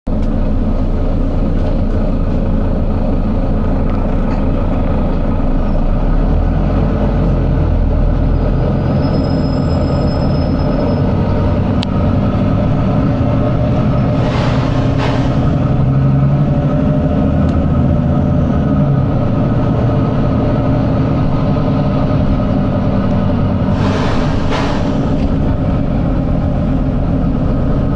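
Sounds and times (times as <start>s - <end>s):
bus diesel engine rumbling: 0.0s - 27.9s
air hiss: 23.7s - 25.5s.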